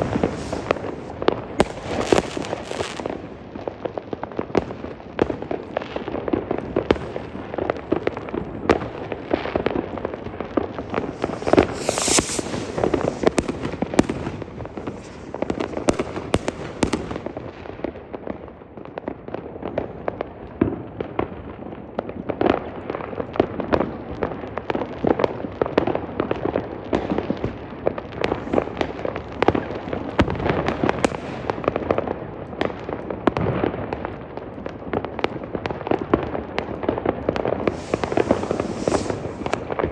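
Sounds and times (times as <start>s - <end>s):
high hiss: 0.0s - 3.0s, 10.8s - 13.4s, 37.6s - 39.7s
fireworks and firecrackers banging: 0.0s - 39.9s.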